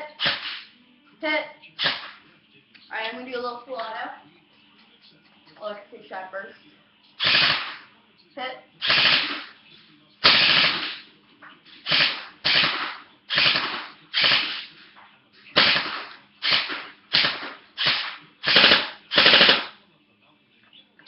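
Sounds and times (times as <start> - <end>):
airsoft rifle firing bursts: 0.2 - 0.7, 1.8 - 2.2, 7.2 - 7.9, 8.8 - 9.6, 10.2 - 11.1, 11.8 - 14.7, 15.6 - 19.8.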